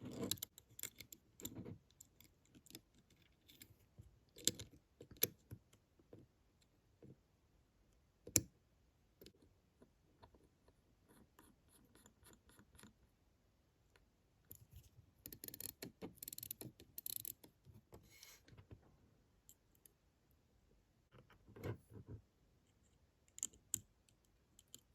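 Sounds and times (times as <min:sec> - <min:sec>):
small metal tools clicking: 0:15.3 - 0:17.4.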